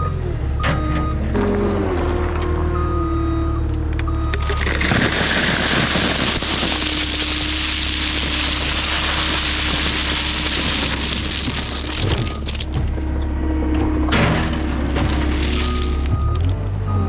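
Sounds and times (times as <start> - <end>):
diesel engine running: 0.0 - 17.0
gravel pouring: 3.5 - 13.5, 14.1 - 17.0.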